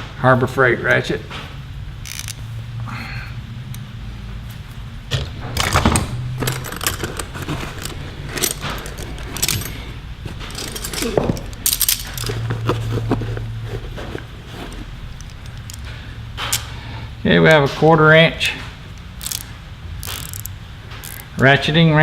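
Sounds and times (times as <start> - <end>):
metal tools clinking and rattling: 2.1 - 2.4, 5.6 - 16.8, 18.9 - 21.4.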